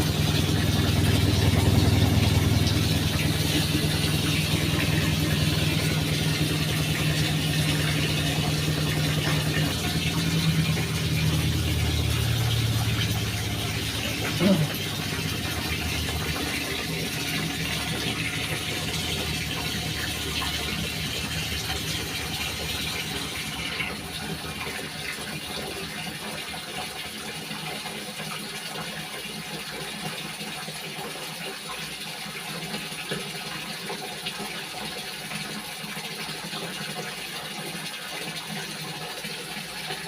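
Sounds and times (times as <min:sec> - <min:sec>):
washing machine motor humming: 0:00.0 - 0:27.1
water rushing in a tub: 0:00.0 - 0:40.0.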